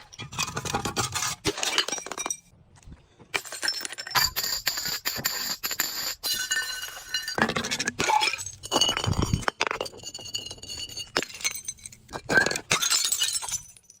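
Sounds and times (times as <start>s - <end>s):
glass crunching: 6.2s - 14.0s
glass shards clinking: 6.2s - 14.0s.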